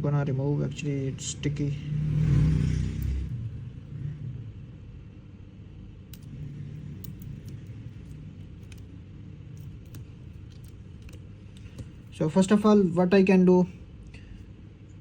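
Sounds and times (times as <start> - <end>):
low background rumble: 0.0 - 15.0.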